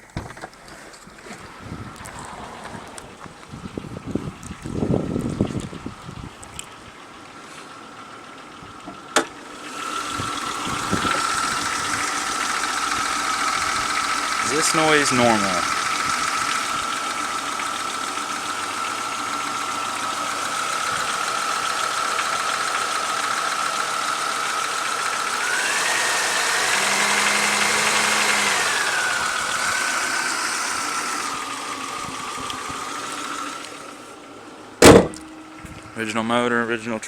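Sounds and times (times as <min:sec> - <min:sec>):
car engine idling with knocking: 0:00.0 - 0:36.0
engine whine: 0:00.0 - 0:37.0
engine revving: 0:01.8 - 0:05.5, 0:09.0 - 0:34.0.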